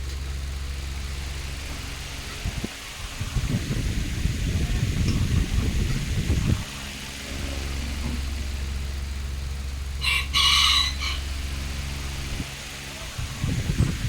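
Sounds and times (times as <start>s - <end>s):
steady low hum: 0.0s - 14.0s
rooster crowing: 10.0s - 11.6s.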